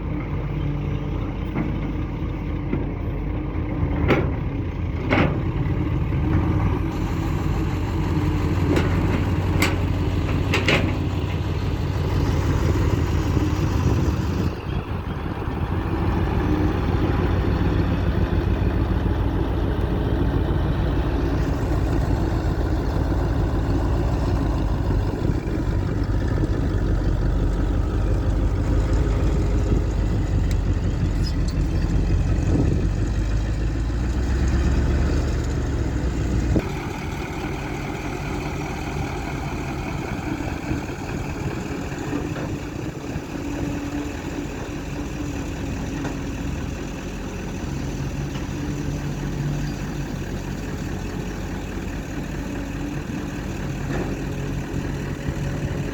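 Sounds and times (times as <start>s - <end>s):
excavator engine running: 0.0s - 55.9s.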